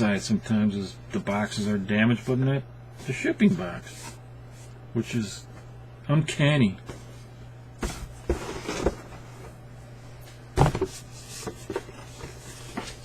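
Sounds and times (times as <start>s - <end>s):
low steady hum: 0.0s - 13.0s
boxes knocking and rustling: 7.8s - 9.6s, 10.6s - 13.0s.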